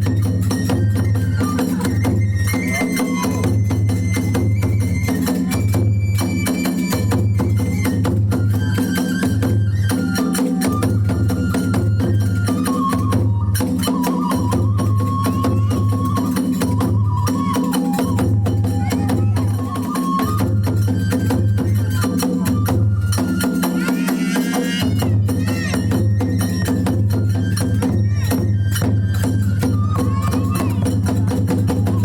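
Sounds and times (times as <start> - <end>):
hand cymbals clashing: 0.0 - 8.2, 23.1 - 32.0
bamboo flute melody: 0.0 - 32.0.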